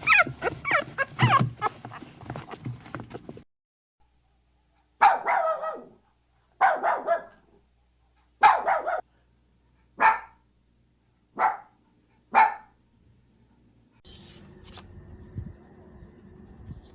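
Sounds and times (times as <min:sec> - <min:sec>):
dog barking: 0:00.0 - 0:02.6, 0:05.0 - 0:07.5, 0:08.4 - 0:09.1, 0:10.0 - 0:10.4, 0:11.4 - 0:12.8.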